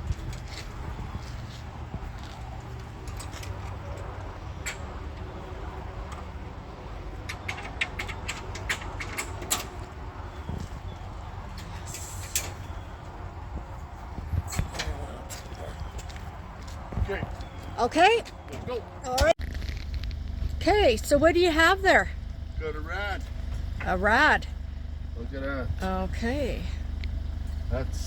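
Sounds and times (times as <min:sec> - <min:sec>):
scrap metal clicking and knocking: 0:02.4 - 0:05.4, 0:07.0 - 0:10.7
steady low rumble: 0:18.7 - 0:28.0.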